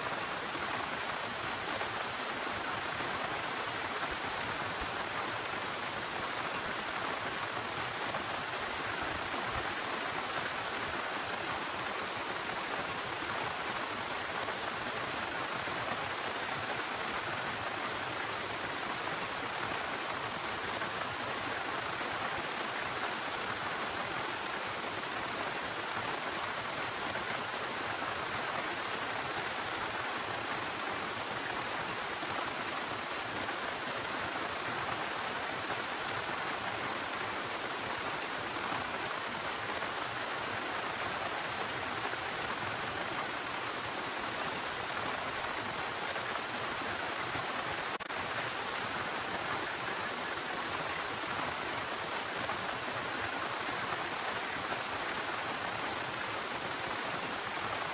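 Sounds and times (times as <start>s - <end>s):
heavy rain falling: 0.0s - 25.2s, 29.8s - 52.9s.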